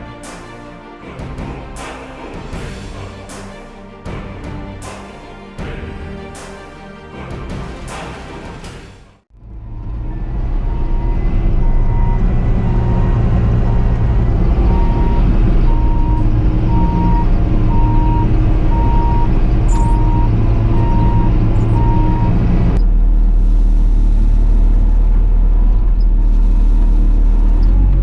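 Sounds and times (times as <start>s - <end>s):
diesel engine running: 9.3s - 28.0s
backup alarm beeping: 14.7s - 22.4s.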